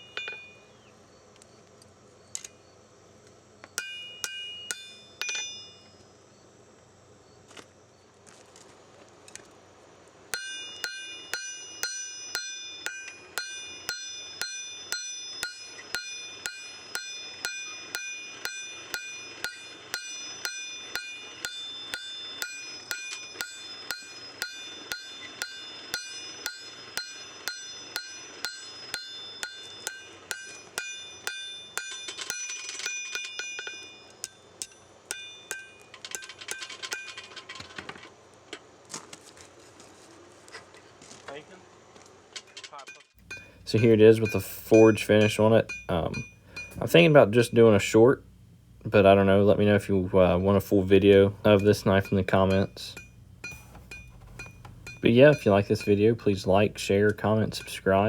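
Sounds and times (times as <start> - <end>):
hammer striking steel on anvil: 0.0 - 0.8, 3.7 - 6.0, 10.4 - 37.2, 42.9 - 47.5, 50.8 - 58.0.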